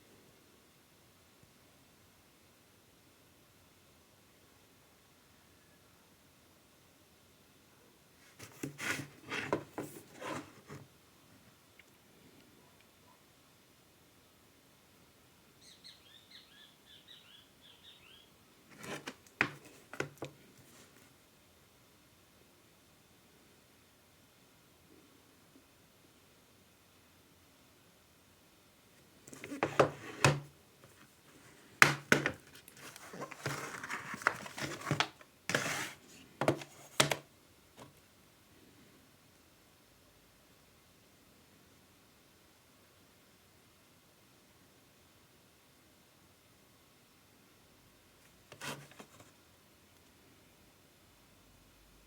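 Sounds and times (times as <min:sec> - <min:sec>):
small bird chirping: 0:15.6 - 0:18.3
plastic crinkling: 0:30.8 - 0:37.1.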